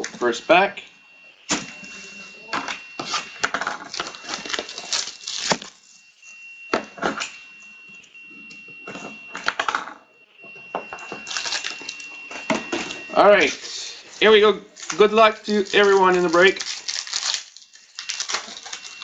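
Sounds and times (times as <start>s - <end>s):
faint high whine: 0.0s - 19.0s
card wrapper crinkling: 3.8s - 5.8s, 11.3s - 12.0s, 14.2s - 19.0s.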